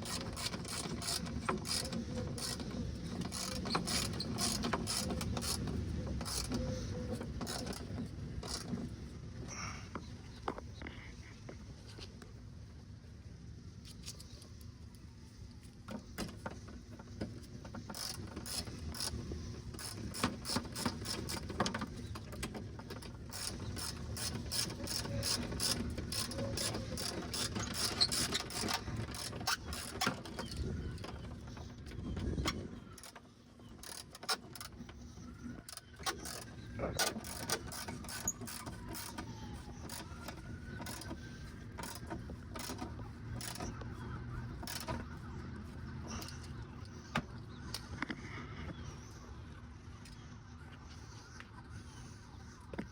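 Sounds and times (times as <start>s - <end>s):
ratchet wrench clicking: 0.0s - 6.6s.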